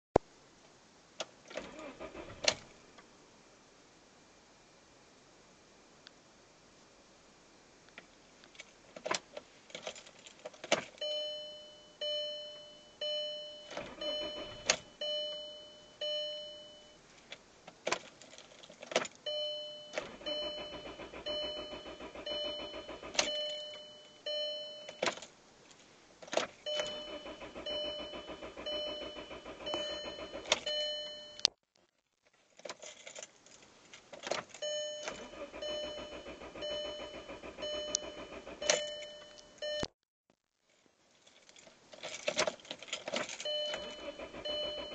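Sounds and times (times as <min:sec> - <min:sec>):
engine cranking by starter: 0:01.5 - 0:02.7, 0:13.7 - 0:14.9, 0:20.0 - 0:23.4, 0:26.7 - 0:30.7, 0:35.0 - 0:39.1, 0:43.4 - 0:44.9
warning chime dinging: 0:11.0 - 0:17.0, 0:19.3 - 0:25.0, 0:26.7 - 0:31.5, 0:34.6 - 0:39.9, 0:43.5 - 0:44.9
ignition key clicking: 0:26.4 - 0:30.7, 0:35.0 - 0:39.4.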